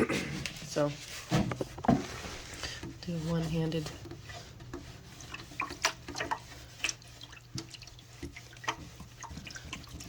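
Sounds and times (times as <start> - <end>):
wet cloth scrubbing plastic: 0.4 - 10.0
water splashing and dripping: 5.1 - 10.0.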